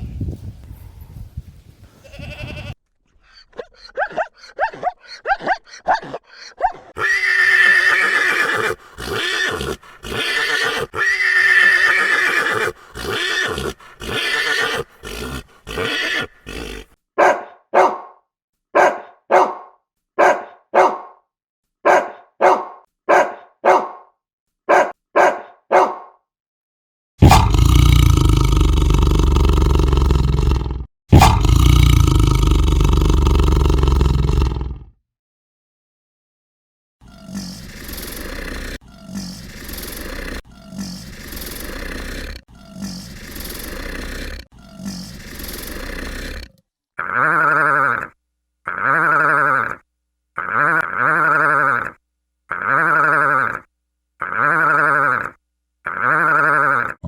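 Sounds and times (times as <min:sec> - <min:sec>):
animal calls: 0:02.5 - 0:17.0.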